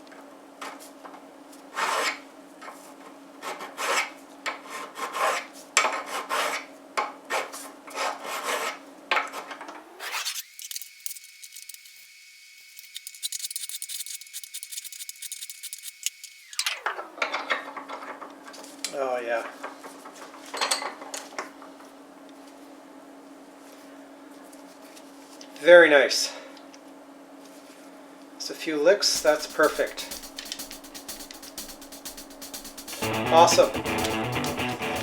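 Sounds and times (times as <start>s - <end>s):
faint high hiss: 29.2s - 35.0s
steady high tone: 29.2s - 35.0s
steady low hum: 29.2s - 35.0s.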